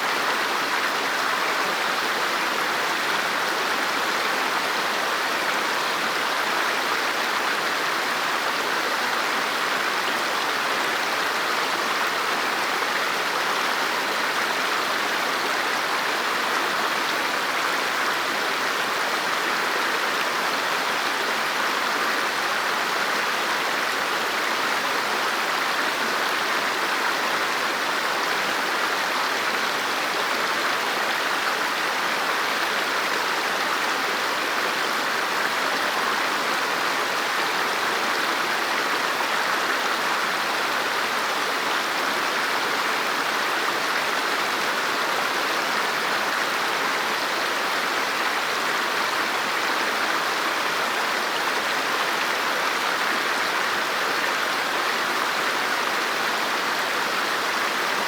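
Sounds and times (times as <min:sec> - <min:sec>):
river water flowing over rocks: 0:00.0 - 0:58.0.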